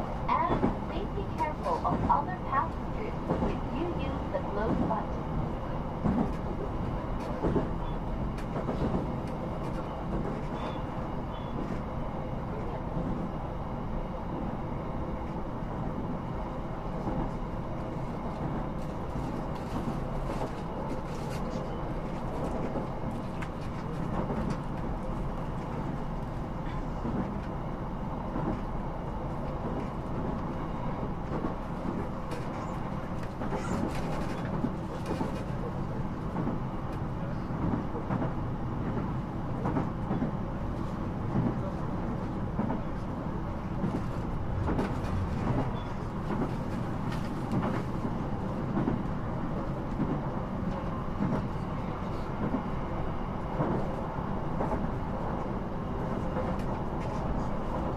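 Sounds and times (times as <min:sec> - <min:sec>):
train wheels and motors rumbling: 0:00.0 - 0:57.9.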